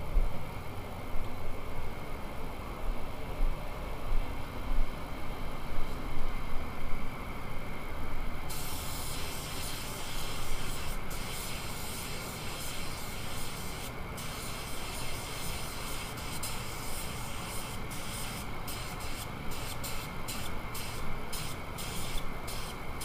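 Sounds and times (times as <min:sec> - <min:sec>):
paint spray gun hissing: 0:08.5 - 0:22.8.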